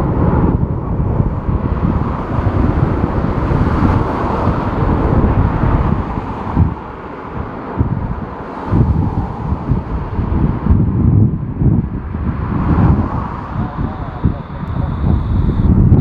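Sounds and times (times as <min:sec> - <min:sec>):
strong gusty wind on microphone: 0:00.0 - 0:16.0.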